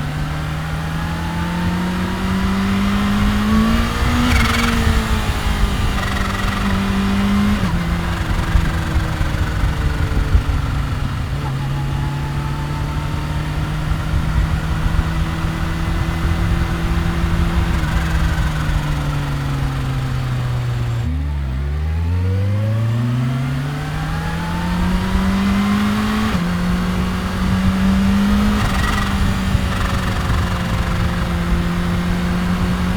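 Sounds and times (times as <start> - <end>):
motorcycle engine accelerating: 0.0 - 32.9.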